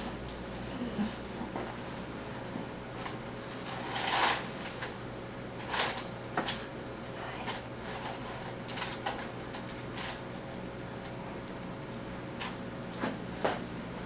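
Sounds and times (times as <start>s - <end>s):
rustling handling noise: 5.6s - 6.6s, 7.5s - 10.3s.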